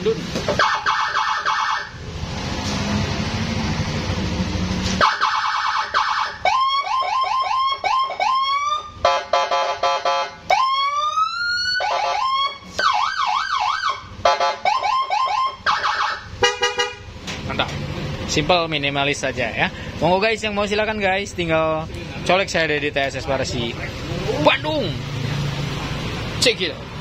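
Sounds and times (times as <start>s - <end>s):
electronic siren: 0.5s - 2.0s, 5.0s - 9.0s, 10.0s - 16.3s.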